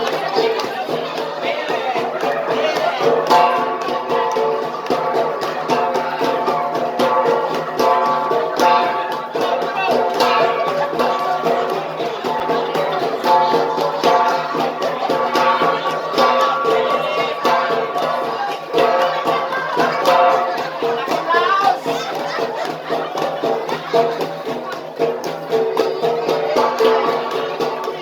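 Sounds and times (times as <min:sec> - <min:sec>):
bronze gongs beaten in rhythm: 0:02.2 - 0:28.0.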